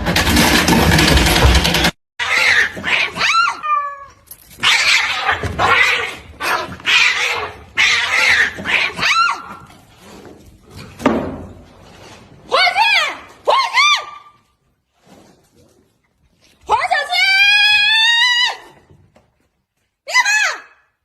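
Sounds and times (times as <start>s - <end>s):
cat hissing and yowling: 2.2s - 9.8s.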